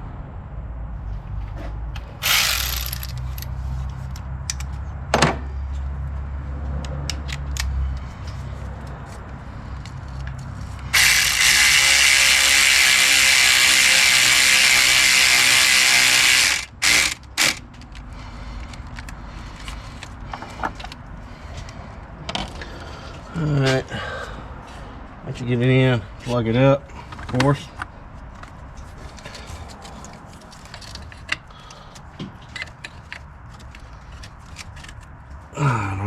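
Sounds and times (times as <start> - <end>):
tool clicks: 2.2 - 3.5
ratchet wrench clicking: 2.2 - 3.6, 10.9 - 17.6.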